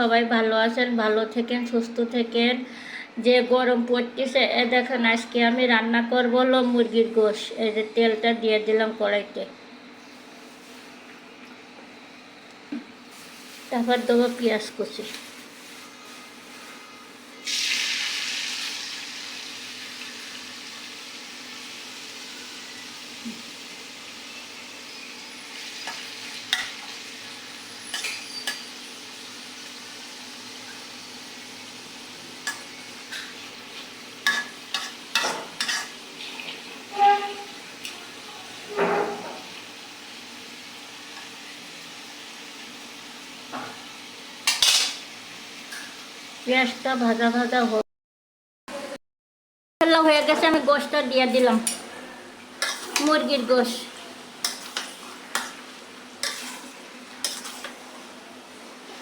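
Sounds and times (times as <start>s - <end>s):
onions sizzling in hot oil: 13.0s - 47.8s, 52.4s - 59.0s.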